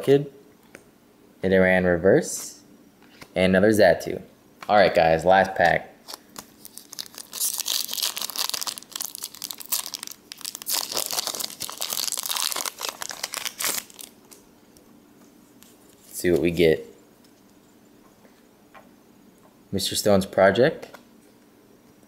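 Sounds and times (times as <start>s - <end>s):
foil wrapper crinkling and tearing: 6.0s - 14.4s.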